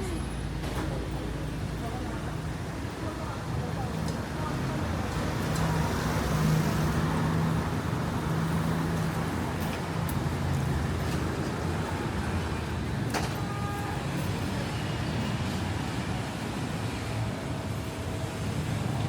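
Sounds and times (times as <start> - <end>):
traffic noise: 0.0 - 19.0
vehicle engine humming: 0.0 - 19.0.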